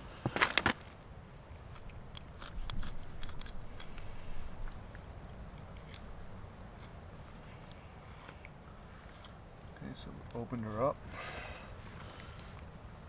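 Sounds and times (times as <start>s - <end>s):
knife crunching through fish bones: 2.1s - 4.0s.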